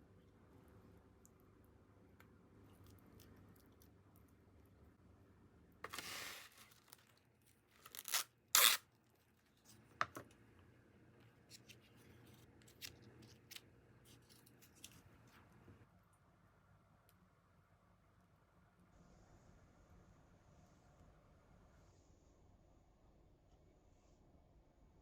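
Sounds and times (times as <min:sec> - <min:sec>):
packaging being torn: 0:07.8 - 0:08.8.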